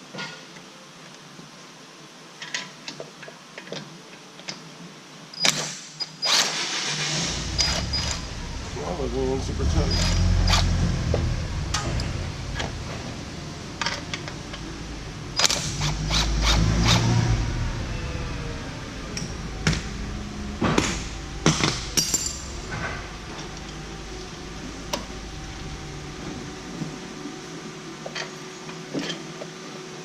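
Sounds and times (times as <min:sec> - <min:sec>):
low rumble: 0:07.1 - 0:28.0.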